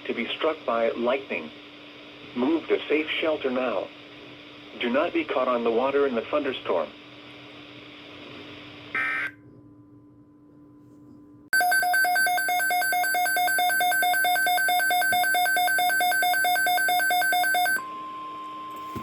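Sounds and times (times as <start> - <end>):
harsh pulsing alarm beeping: 11.6 - 19.0.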